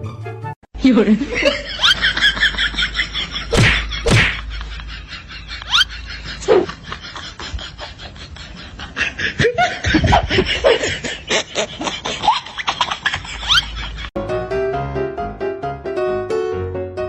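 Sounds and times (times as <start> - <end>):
people laughing and giggling: 1.2 - 14.2.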